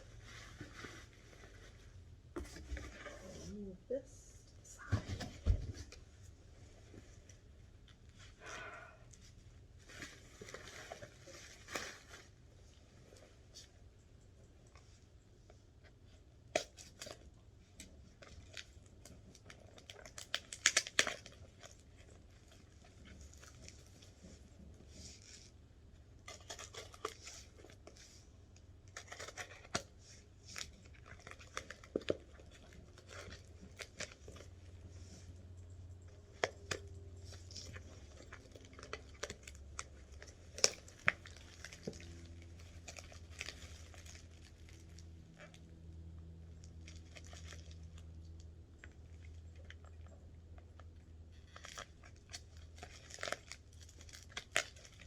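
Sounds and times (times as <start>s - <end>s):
packing material crumpled and torn: 9.8s - 13.3s, 16.5s - 17.3s, 18.0s - 25.5s, 26.2s - 34.9s, 36.1s - 45.7s, 46.6s - 50.0s, 51.3s - 55.0s.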